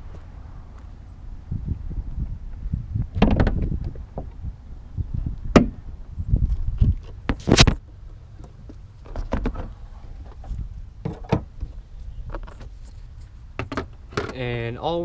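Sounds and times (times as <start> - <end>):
steady low rumble: 0.0 - 9.1.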